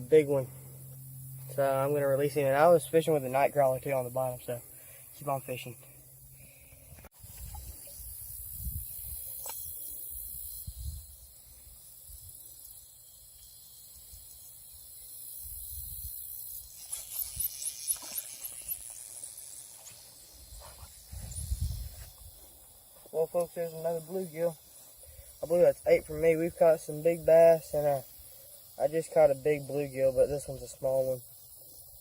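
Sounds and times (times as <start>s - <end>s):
high-pitched insect buzz: 0.0s - 32.0s
wind rumble on microphone: 7.0s - 9.2s, 10.6s - 11.3s, 21.0s - 22.4s.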